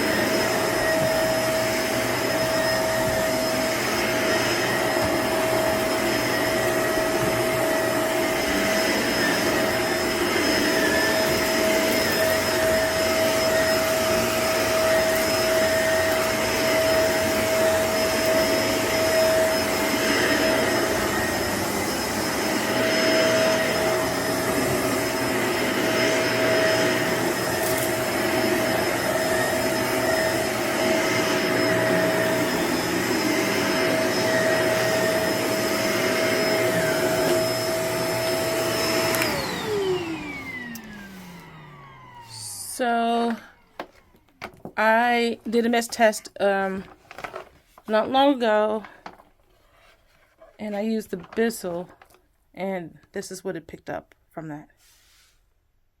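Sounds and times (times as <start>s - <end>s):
vacuum cleaner on carpet: 0.0s - 46.1s.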